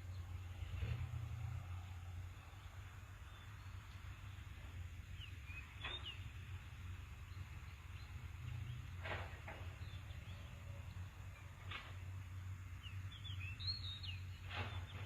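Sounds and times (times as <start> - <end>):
small birds chirping: 2.4 - 11.4, 12.6 - 15.0.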